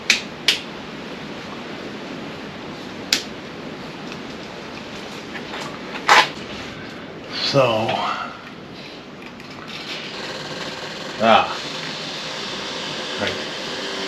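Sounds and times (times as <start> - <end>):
steady background hiss: 0.0 - 14.0.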